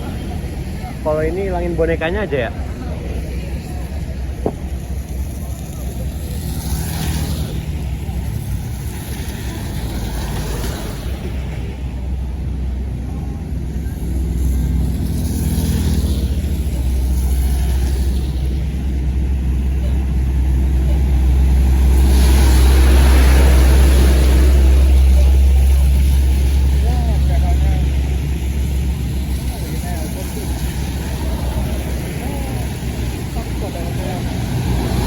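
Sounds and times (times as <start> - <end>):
bus engine rumble: 0.0 - 35.0
passing traffic: 0.0 - 35.0.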